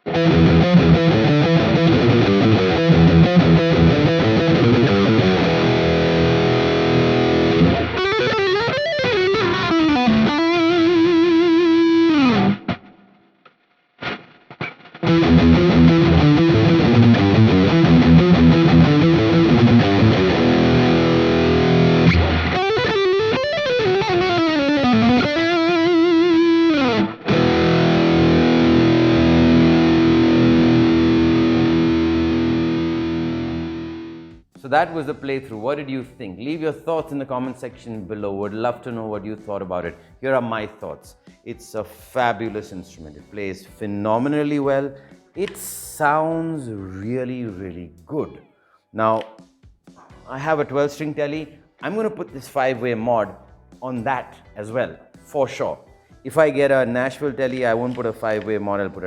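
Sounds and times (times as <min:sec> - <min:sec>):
distorted electric guitar riff: 0:00.0 - 0:34.4.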